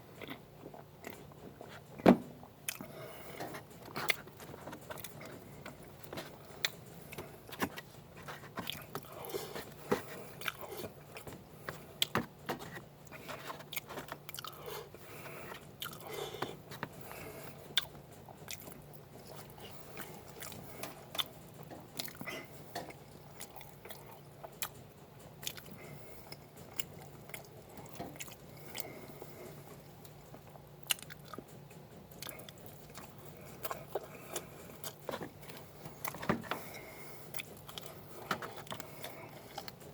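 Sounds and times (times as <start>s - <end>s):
person chewing crunchy food: 0.0s - 24.8s, 25.4s - 39.9s
steady low hum: 0.0s - 39.9s.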